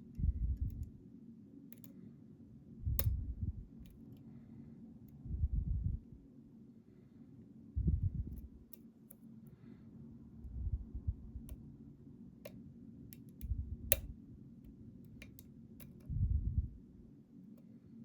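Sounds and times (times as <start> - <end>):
lock pick clicking on pins: 1.7 - 2.0, 12.4 - 14.1, 15.0 - 16.1.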